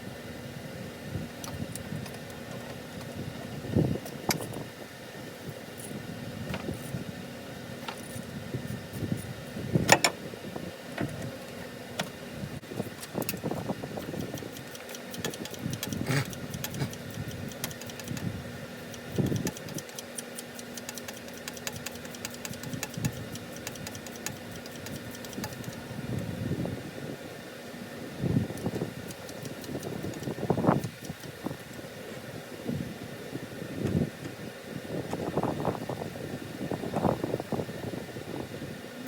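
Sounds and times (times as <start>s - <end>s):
steady hum: 0.0s - 39.0s
ratchet wrench clicking: 14.0s - 25.8s.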